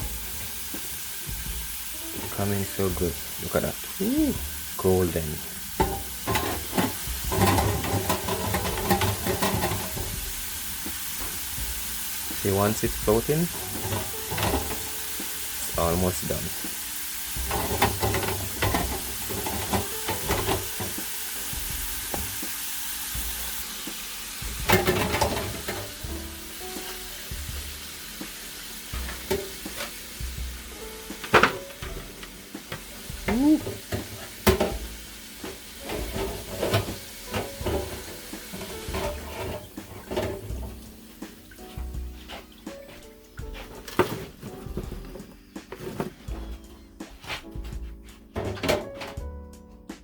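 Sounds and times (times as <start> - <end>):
fries sizzling in hot oil: 0.0 - 49.3
utensils knocking and scraping: 5.8 - 10.2, 13.5 - 15.0, 17.4 - 21.0, 24.6 - 26.0, 35.4 - 40.8, 43.5 - 47.5, 48.4 - 49.3.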